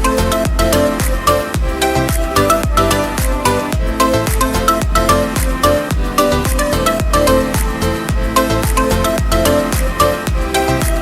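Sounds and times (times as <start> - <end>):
kick drum beat: 0.0 - 11.0
music melody: 0.0 - 11.0.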